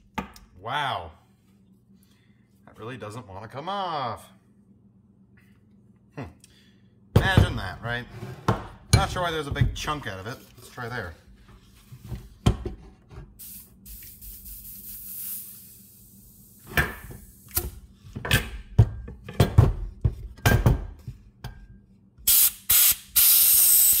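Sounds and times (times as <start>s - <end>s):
compressed air hissing bursts: 13.4s - 17.5s, 22.3s - 24.0s.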